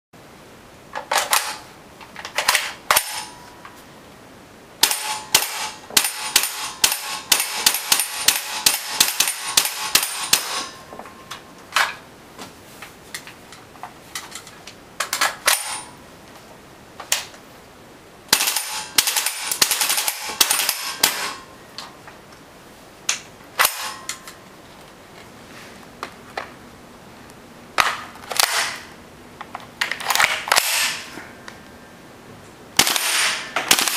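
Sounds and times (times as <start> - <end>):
airsoft rifle shots: 2.4 - 3.3, 4.8 - 10.8, 15.3 - 15.9, 18.3 - 21.5, 23.6 - 24.1, 27.8 - 28.9, 30.1 - 31.1, 32.8 - 33.9.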